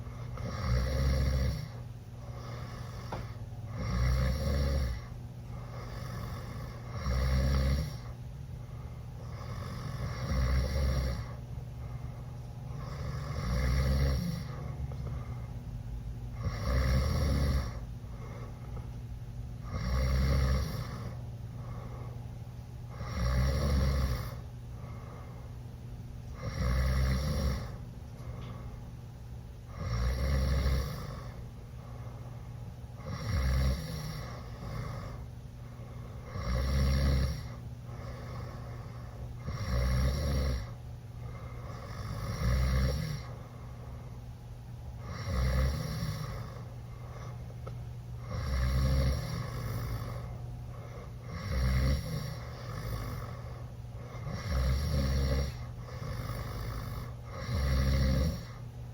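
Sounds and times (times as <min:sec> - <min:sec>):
quiet breathing: 0:00.0 - 0:58.9
boy snoring loudly: 0:00.4 - 0:01.8, 0:02.4 - 0:05.1, 0:05.8 - 0:08.1, 0:09.2 - 0:11.4, 0:12.7 - 0:14.6, 0:16.4 - 0:17.8, 0:19.6 - 0:21.2, 0:22.9 - 0:24.4, 0:26.4 - 0:27.8, 0:29.8 - 0:31.4, 0:33.0 - 0:35.2, 0:36.3 - 0:38.5, 0:39.4 - 0:40.8, 0:41.7 - 0:43.3, 0:45.0 - 0:46.6, 0:48.2 - 0:50.3, 0:51.2 - 0:53.4, 0:54.2 - 0:58.6.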